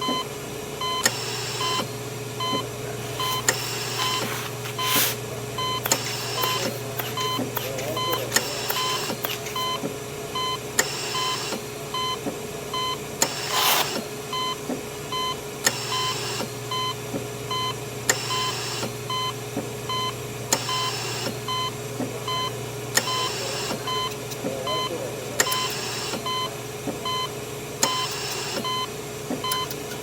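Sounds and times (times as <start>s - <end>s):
machine hum: 0.4s - 11.9s
monitor beeping: 0.8s - 12.2s, 15.2s - 27.3s, 27.9s - 30.0s.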